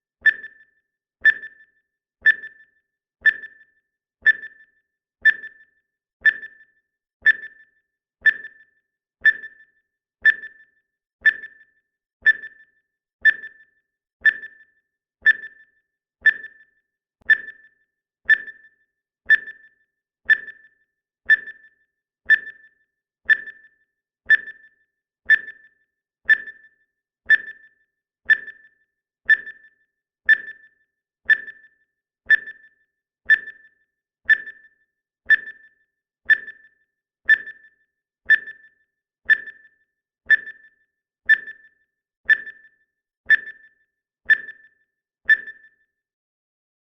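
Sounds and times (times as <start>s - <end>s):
high electronic timer pings: 28.4s - 45.9s.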